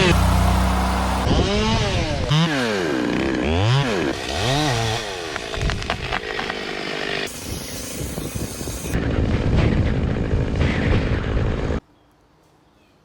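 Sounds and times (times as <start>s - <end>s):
chainsaw engine revving: 0.0s - 9.0s.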